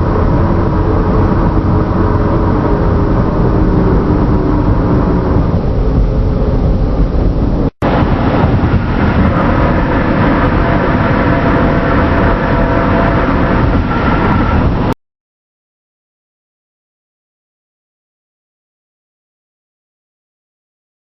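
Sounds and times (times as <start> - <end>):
car engine and road rumble: 0.0 - 15.0.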